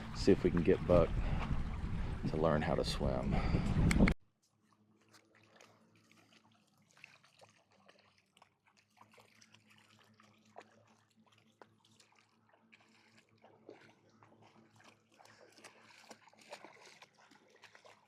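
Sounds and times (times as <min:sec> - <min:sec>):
lake water lapping and splashing: 0:00.0 - 0:18.0.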